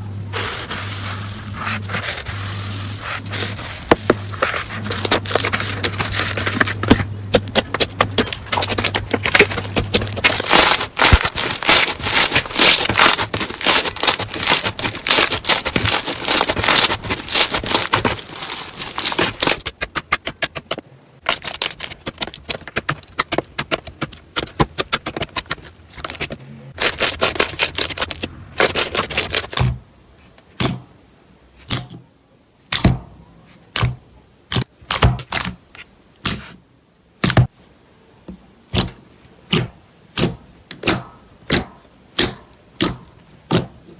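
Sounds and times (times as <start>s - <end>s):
slime crackling and popping: 4.8s - 26.2s.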